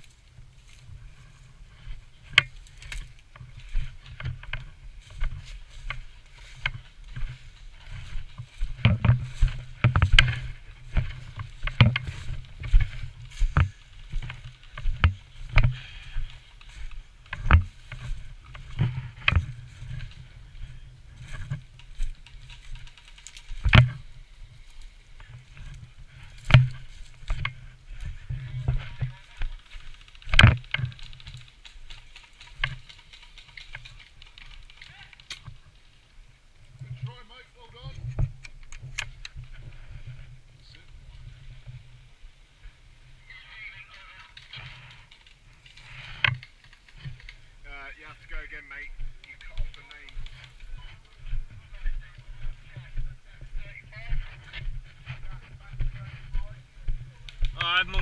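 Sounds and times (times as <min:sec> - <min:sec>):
sharp clicks and knocks: 0:08.4 - 0:15.8, 0:21.3 - 0:24.0, 0:28.7 - 0:35.6, 0:44.4 - 0:47.4.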